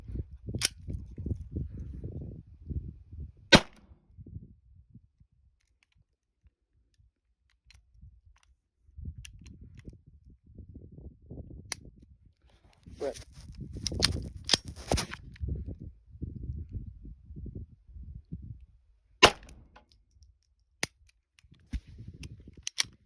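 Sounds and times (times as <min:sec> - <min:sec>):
pistol shots: 0:03.6 - 0:03.8, 0:19.2 - 0:19.5.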